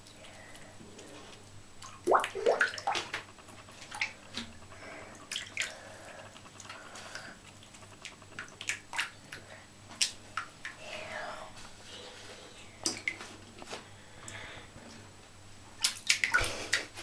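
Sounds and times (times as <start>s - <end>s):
small water splashes and drips: 1.8s - 3.2s, 8.0s - 10.8s, 15.8s - 17.0s.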